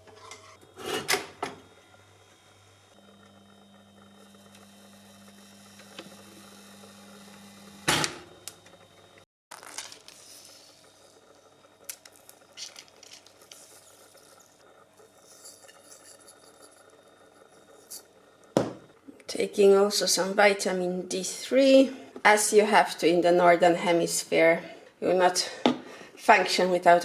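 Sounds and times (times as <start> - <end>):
small objects clinking and knocking: 9.5 - 10.3, 11.9 - 13.6.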